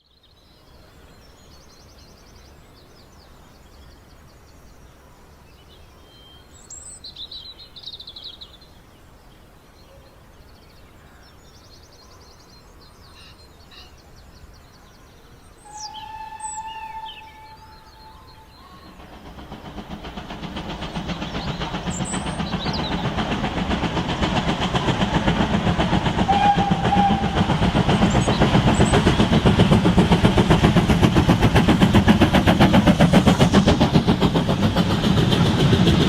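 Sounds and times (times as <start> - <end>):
small birds trilling and chirping: 0.0 - 26.0, 27.7 - 31.2
whistle-like tone: 15.7 - 18.5.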